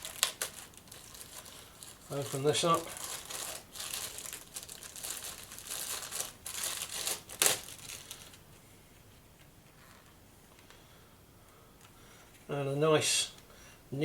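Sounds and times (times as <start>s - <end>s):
packaging crinkling: 0.0s - 8.5s.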